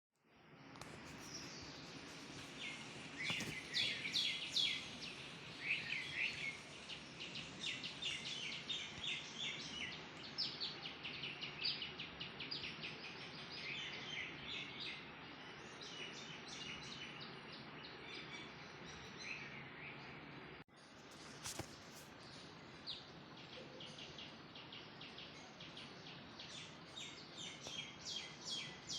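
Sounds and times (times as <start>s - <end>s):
birds chirping and twittering: 0.3s - 28.9s
outdoor hiss: 0.8s - 10.5s.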